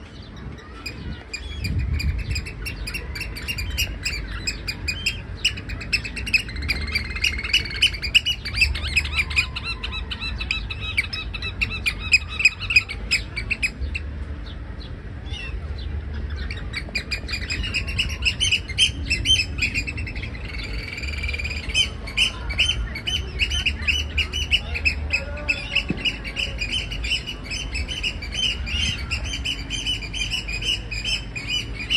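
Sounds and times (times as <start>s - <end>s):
oystercatcher piping: 0.6s - 14.6s, 15.3s - 31.9s
low rumble: 8.0s - 31.9s.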